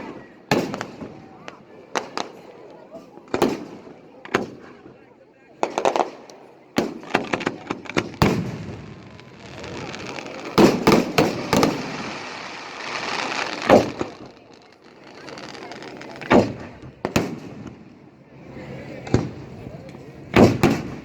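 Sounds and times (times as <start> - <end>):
fireworks bangs and pops: 0.0 - 18.0, 19.0 - 19.6, 20.3 - 21.0
crackling hiss: 5.7 - 17.7.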